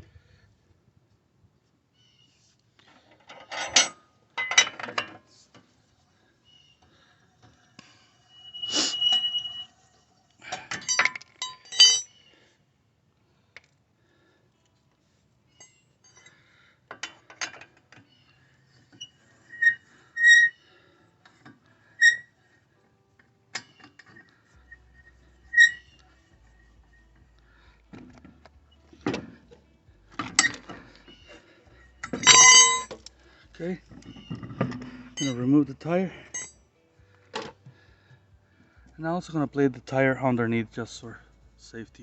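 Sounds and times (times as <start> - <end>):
lug nuts clinking: 2.8 - 5.2, 10.4 - 12.2, 26.9 - 31.4, 32.0 - 33.2.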